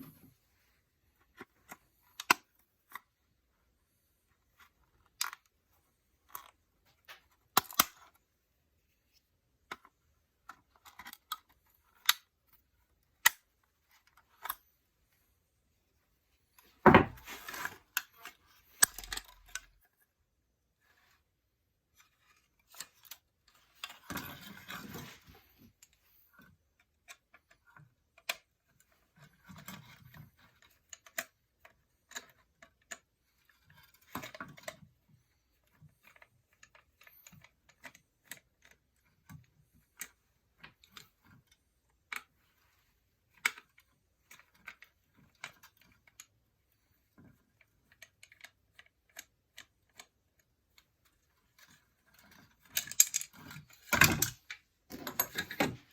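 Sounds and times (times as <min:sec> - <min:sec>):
small plastic parts clicking: 0:01.3 - 0:03.2, 0:04.5 - 0:05.6, 0:06.2 - 0:08.2, 0:16.6 - 0:19.8, 0:21.9 - 0:55.9.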